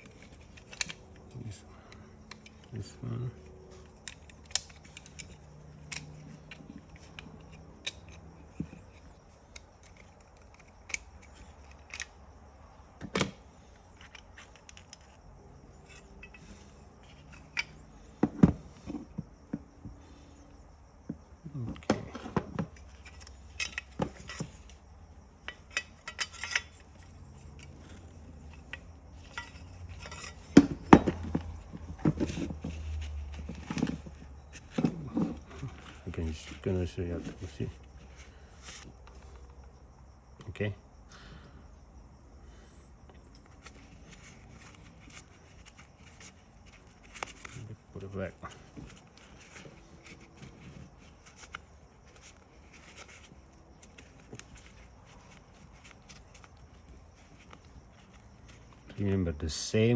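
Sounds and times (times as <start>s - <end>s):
seatbelt parts clicking and clinking: 0.0s - 12.3s, 13.1s - 15.2s, 15.8s - 19.1s, 22.7s - 36.3s, 43.1s - 47.6s.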